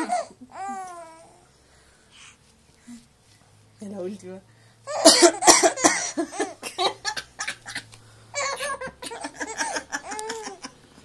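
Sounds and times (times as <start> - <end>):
baby laughing: 8.4 - 10.8.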